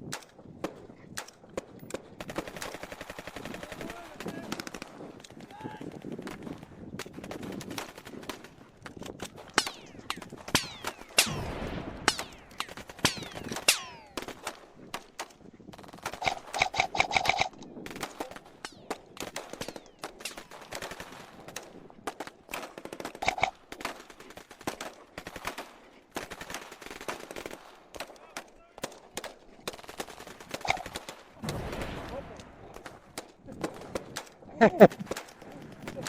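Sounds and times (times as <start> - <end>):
airsoft guns firing: 7.0 - 34.3.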